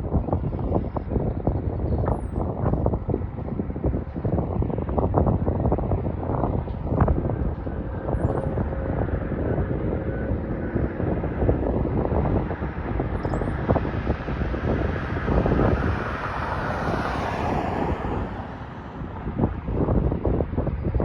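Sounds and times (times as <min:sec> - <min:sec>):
road traffic: 0:00.0 - 0:21.0
wind buffeting microphone: 0:00.0 - 0:21.0
vehicle passing: 0:05.7 - 0:20.4.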